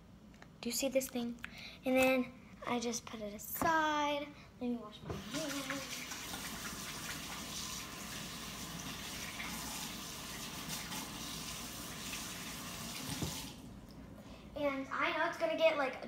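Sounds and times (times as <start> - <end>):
tap running into sink: 12.9 - 13.6.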